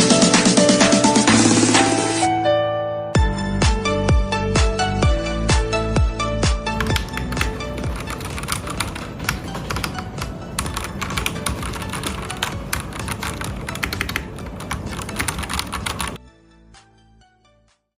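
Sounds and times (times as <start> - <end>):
background music: 0.0 - 17.9
fast typing on mechanical keyboard: 6.8 - 16.2.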